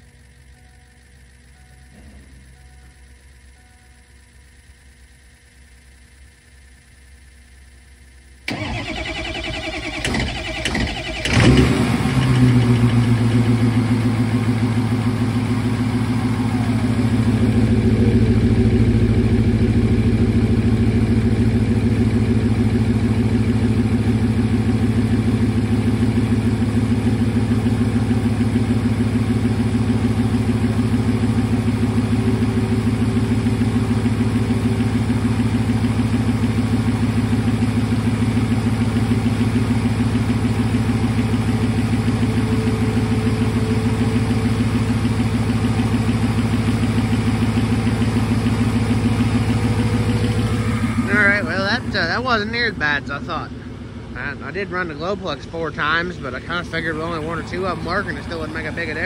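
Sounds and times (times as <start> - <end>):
diesel engine cranking and idling: 0.0 - 59.0
whine falling in pitch: 49.7 - 53.4.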